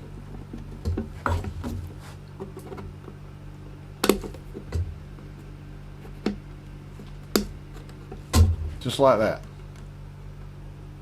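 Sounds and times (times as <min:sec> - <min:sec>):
steady low hum: 0:00.0 - 0:11.0
dull thump: 0:08.3 - 0:08.8.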